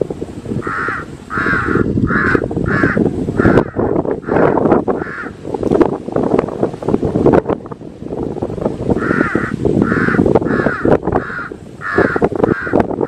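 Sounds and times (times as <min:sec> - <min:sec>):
crows cawing: 0:00.6 - 0:05.4, 0:09.0 - 0:12.8.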